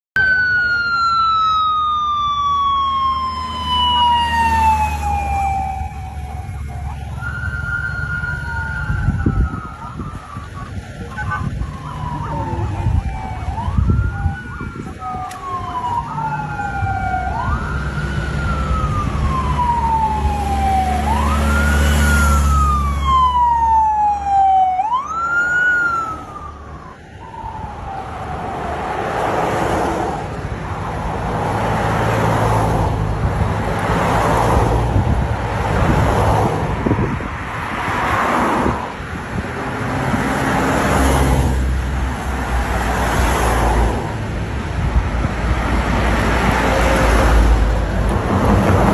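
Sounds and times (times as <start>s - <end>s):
police siren wailing: 0.2s - 30.5s, 39.6s - 44.2s
vehicles whooshing past: 0.2s - 48.9s.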